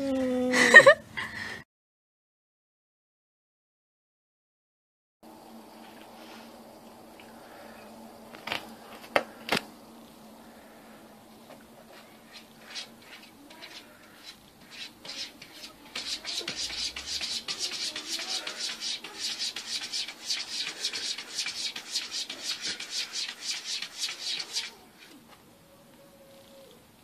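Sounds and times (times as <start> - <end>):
rhythmic rasping strokes: 12.3 - 24.9.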